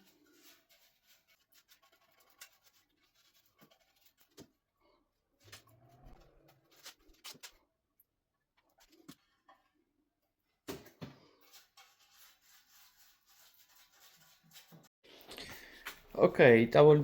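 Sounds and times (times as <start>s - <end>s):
faint scratching: 0.0s - 4.6s, 11.4s - 14.9s.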